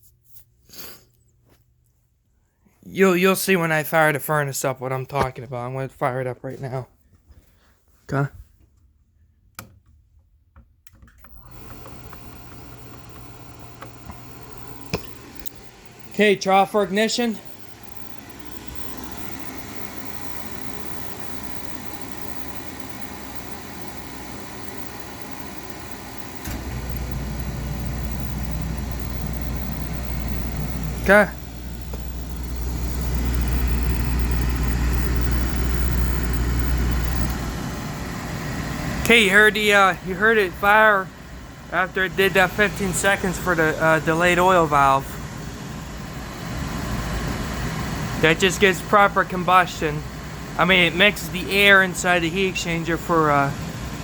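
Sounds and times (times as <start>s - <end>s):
burner motor and blower running: 11.2s - 54.0s
burner switch click: 11.4s - 15.7s.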